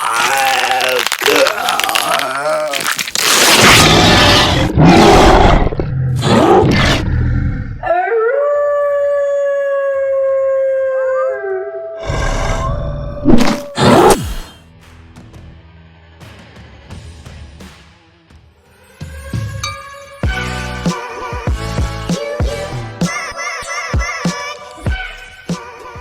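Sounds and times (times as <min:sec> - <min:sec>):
rough growling bursts: 0:03.3 - 0:07.8
long howl: 0:07.8 - 0:13.3.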